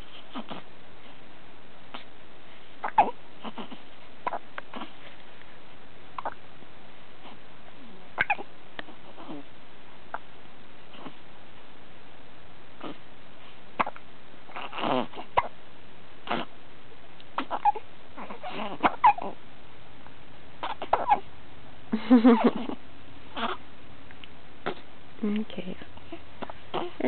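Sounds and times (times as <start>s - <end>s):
hiccups: 0.3s - 0.7s, 2.8s - 4.9s, 6.2s - 6.4s, 8.2s - 8.5s, 12.8s - 13.0s, 13.8s - 15.5s, 16.2s - 16.5s, 17.4s - 19.4s, 20.6s - 21.2s, 23.4s - 23.6s, 24.6s - 24.9s.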